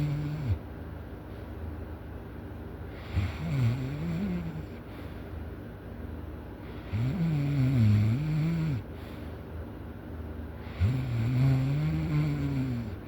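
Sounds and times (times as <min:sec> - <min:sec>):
person snoring: 0:00.0 - 0:00.6, 0:03.0 - 0:04.8, 0:06.8 - 0:08.9, 0:10.6 - 0:13.0.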